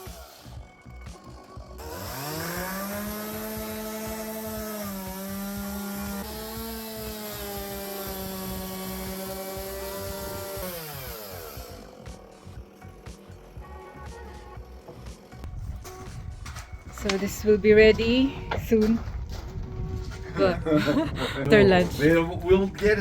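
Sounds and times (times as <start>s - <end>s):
electric power tool motor: 0.0s - 16.1s.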